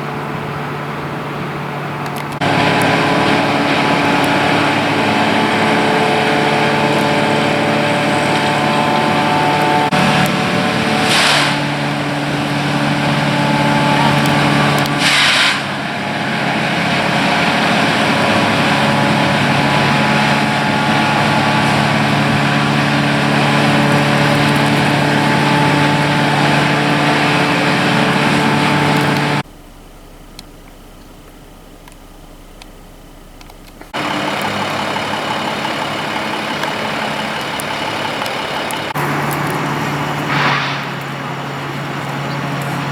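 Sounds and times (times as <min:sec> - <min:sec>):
engine running steadily: 0:00.0 - 0:42.9
short bursts of hiss: 0:11.0 - 0:11.6, 0:15.0 - 0:15.7, 0:40.2 - 0:41.0.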